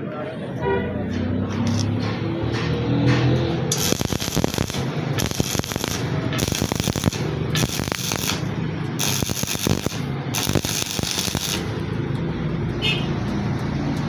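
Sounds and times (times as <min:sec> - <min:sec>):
welding arc crackling and popping: 0:01.5 - 0:02.0, 0:03.2 - 0:12.1
welding hiss: 0:01.6 - 0:01.9, 0:03.7 - 0:11.8.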